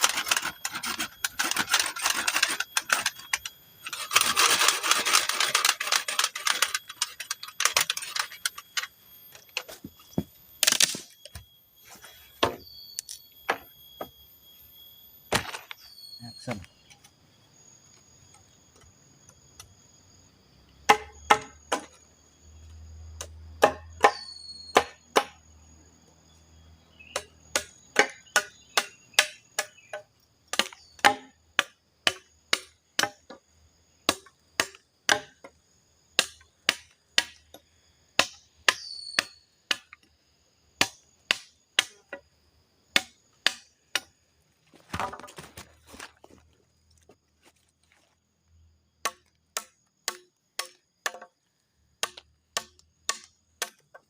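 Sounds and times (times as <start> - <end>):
faint high steady drone: 0.0 - 20.4
wood being chopped by hand: 20.9 - 21.9, 23.2 - 25.4, 27.1 - 33.4, 34.0 - 35.5, 36.1 - 37.5, 38.2 - 40.0, 40.8 - 42.2, 42.9 - 44.1, 49.0 - 51.4, 52.0 - 54.0.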